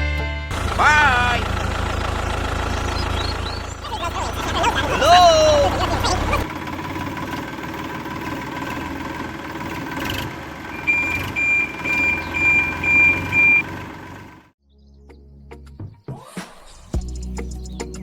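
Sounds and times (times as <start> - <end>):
short reversing beeps: 10.8 - 13.7.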